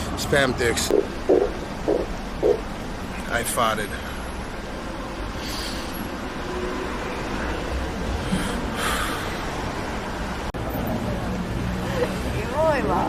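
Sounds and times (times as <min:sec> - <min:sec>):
busy city street noise: 0:00.0 - 0:13.0.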